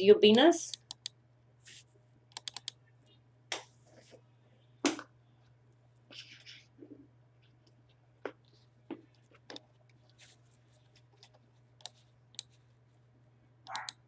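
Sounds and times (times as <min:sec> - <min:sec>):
computer mouse clicks: 0:00.7 - 0:01.2, 0:02.3 - 0:02.8, 0:11.2 - 0:12.5, 0:13.7 - 0:14.0.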